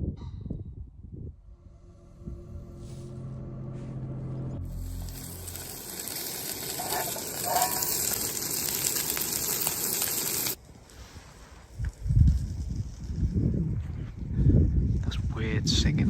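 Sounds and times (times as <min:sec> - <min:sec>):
food sizzling in a frying pan: 0:04.7 - 0:10.6.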